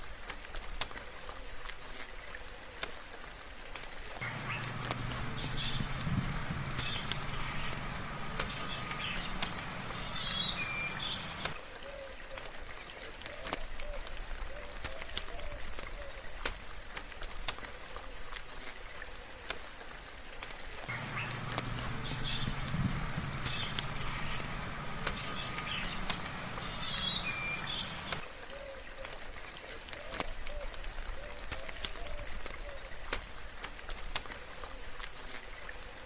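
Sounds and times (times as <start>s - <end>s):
soft rain hiss: 0.0s - 36.0s
water drips ticking: 0.1s - 11.7s, 12.3s - 36.0s
bird chirps: 4.2s - 11.6s, 20.9s - 28.2s
low steady hum: 4.2s - 11.6s, 20.9s - 28.2s.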